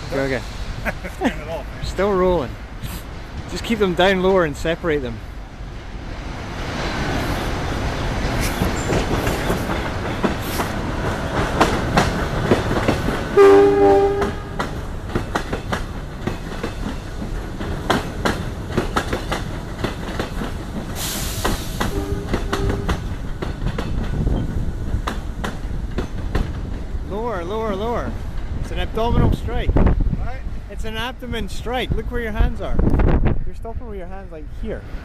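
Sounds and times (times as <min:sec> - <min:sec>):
train rumble with rail clatter: 0:00.0 - 0:35.0
train horn blast: 0:13.4 - 0:14.8, 0:21.8 - 0:23.0.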